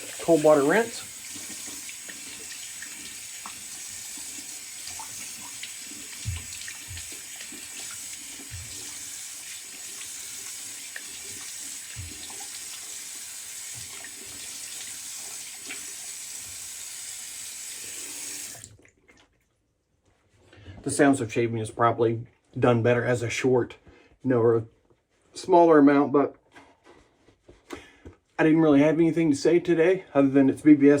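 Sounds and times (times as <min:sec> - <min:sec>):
water splashing: 0:00.0 - 0:16.1
tap water running into sink: 0:00.0 - 0:18.7.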